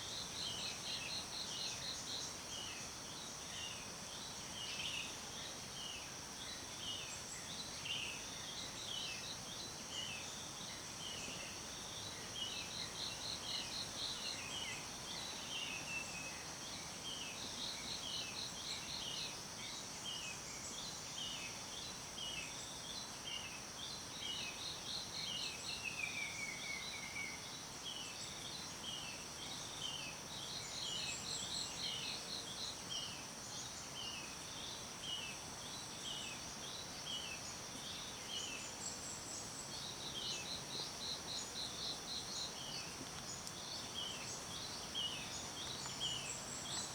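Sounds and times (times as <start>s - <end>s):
soft even hiss: 25.2s - 46.9s.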